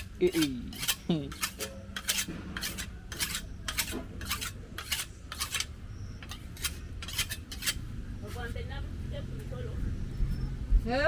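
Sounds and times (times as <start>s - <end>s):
knife blade rasping on sharpener: 0.0s - 7.8s.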